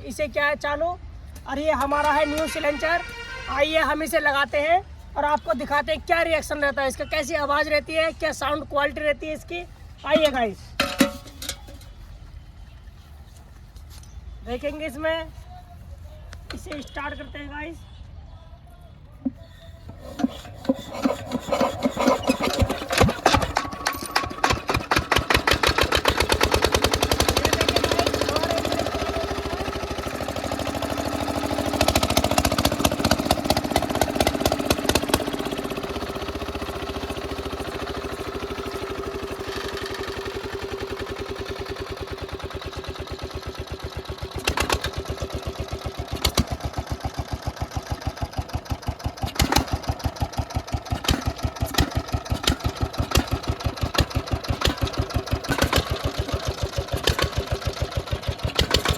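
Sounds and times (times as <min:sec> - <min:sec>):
old engine running: 0:01.7 - 0:04.2, 0:19.8 - 0:58.9
exhaust pops: 0:44.4 - 0:45.1, 0:49.0 - 0:58.9.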